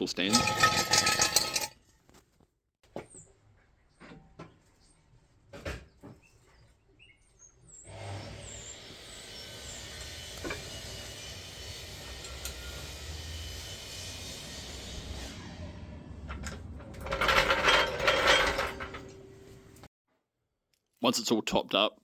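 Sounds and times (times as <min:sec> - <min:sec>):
faint knocks and clinks: 0:00.2 - 0:01.8.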